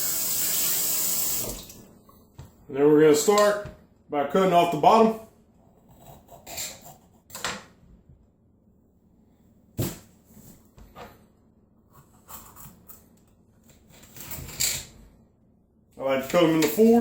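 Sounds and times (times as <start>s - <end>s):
knife cutting pepper: 5.8s - 7.4s, 11.9s - 13.1s.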